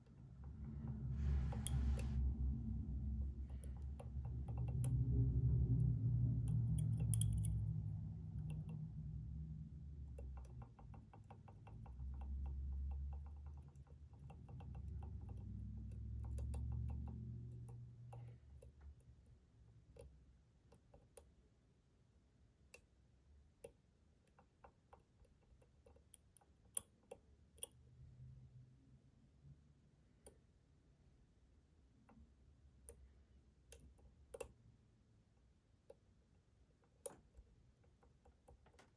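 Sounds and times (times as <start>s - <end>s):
low rumble: 0.0s - 10.7s
lock pick clicking pins: 6.8s - 7.6s.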